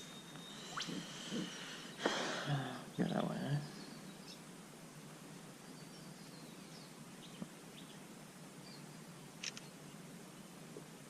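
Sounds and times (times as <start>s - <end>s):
faint birds chirping: 0.0s - 11.0s
outdoor background noise: 0.0s - 11.0s
small clicks: 9.4s - 9.7s.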